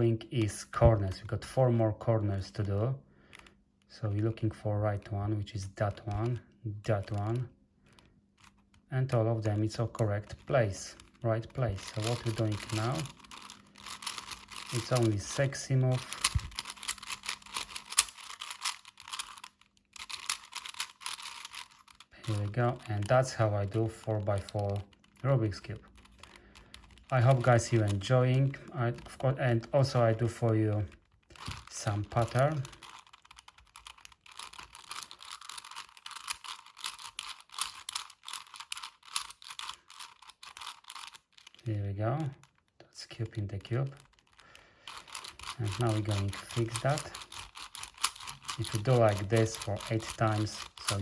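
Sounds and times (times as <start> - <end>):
puzzle cube clicking as turned: 3.3 - 3.5, 5.9 - 8.9, 9.5 - 41.7, 43.8 - 51.0.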